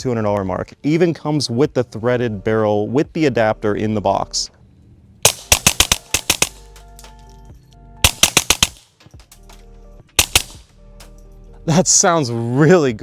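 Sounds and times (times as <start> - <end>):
faint background music: 0.0 - 13.0
muffled suppressed pistol shots: 5.3 - 7.2, 8.0 - 9.0, 10.2 - 10.7.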